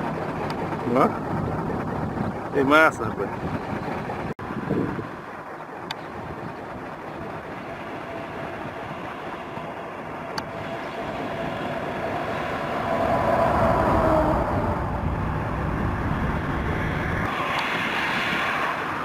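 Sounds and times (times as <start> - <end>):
vehicle passing by: 10.4 - 19.0.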